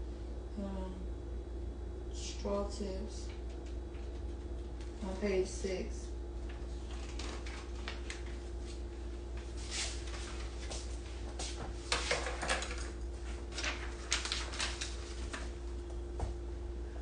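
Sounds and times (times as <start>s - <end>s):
steady hum: 0.0s - 17.0s.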